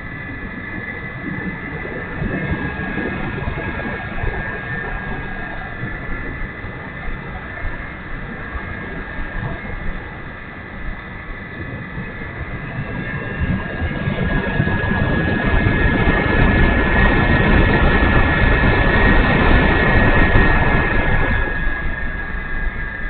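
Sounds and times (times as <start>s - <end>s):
low rumble: 0.0s - 23.0s.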